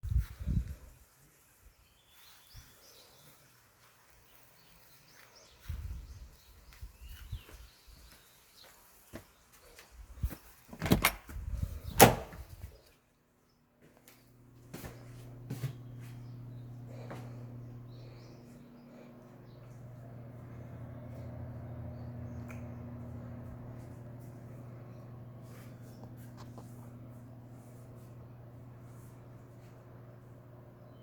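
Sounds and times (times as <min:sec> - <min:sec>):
steady low hum: 0:14.3 - 0:31.0.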